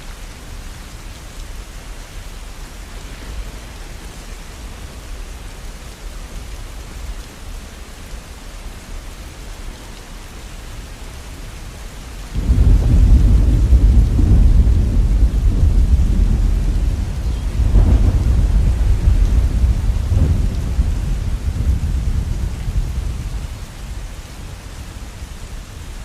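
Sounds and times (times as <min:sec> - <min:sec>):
steady rainfall: 0:00.0 - 0:26.0
thunder rumbling: 0:12.4 - 0:24.6.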